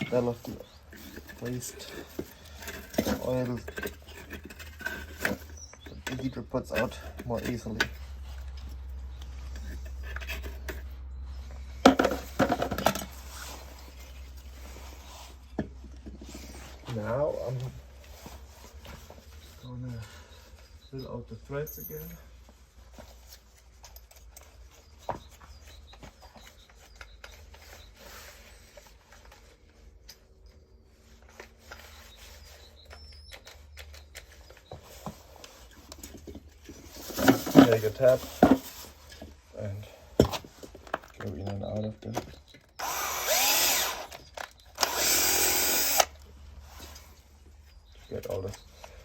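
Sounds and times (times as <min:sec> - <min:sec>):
tools and metal parts handled: 0:00.0 - 0:14.5, 0:21.6 - 0:31.9, 0:32.9 - 0:46.2.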